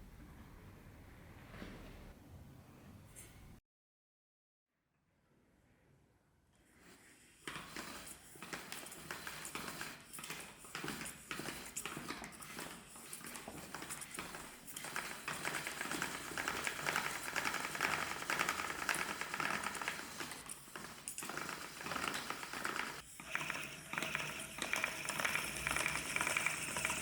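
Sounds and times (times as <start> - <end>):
spinning wheel clattering: 7.6 - 27.0.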